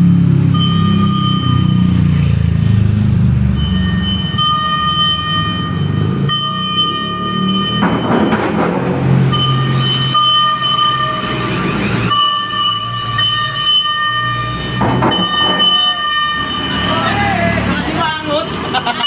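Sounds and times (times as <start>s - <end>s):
low vehicle rumble: 14.3s - 19.0s.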